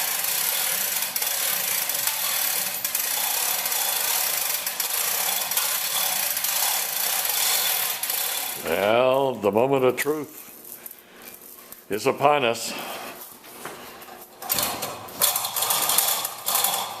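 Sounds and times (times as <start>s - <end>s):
chain rattling through hoist: 0.0s - 8.7s, 14.4s - 17.0s.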